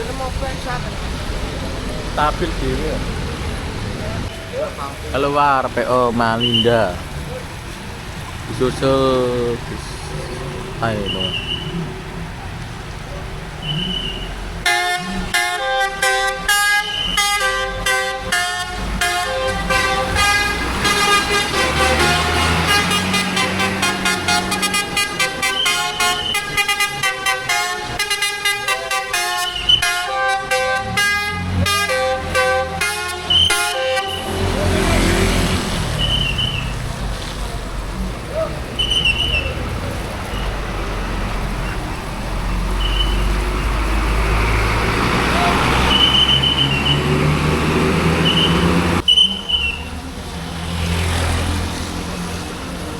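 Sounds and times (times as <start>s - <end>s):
bus engine rumbling: 0.0s - 52.9s
musical air horn playing a tune: 14.0s - 35.4s.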